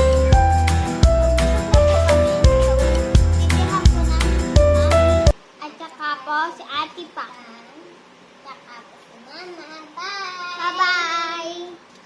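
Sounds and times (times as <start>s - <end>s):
background music with steady beat: 0.0s - 5.4s.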